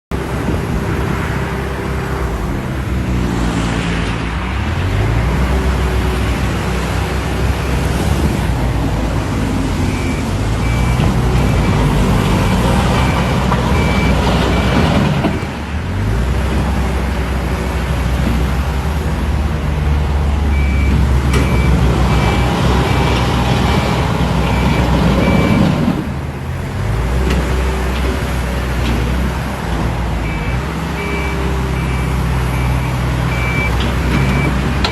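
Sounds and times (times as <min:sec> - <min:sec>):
diesel machinery engines revving: 0:00.1 - 0:34.9
reversing alarm beeping: 0:09.7 - 0:15.4, 0:20.5 - 0:26.0, 0:30.2 - 0:34.9.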